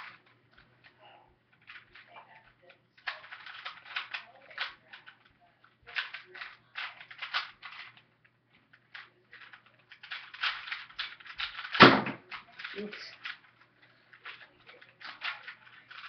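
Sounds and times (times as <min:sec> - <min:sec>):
puzzle cube clicking: 0:03.0 - 0:05.3, 0:05.9 - 0:08.0, 0:08.8 - 0:16.0.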